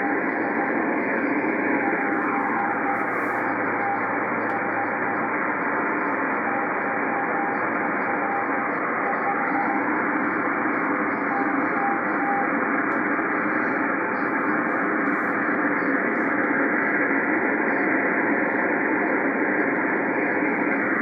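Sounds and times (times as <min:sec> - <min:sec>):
faint morse code tone: 0:00.0 - 0:16.5
radio static hiss: 0:00.0 - 0:21.0.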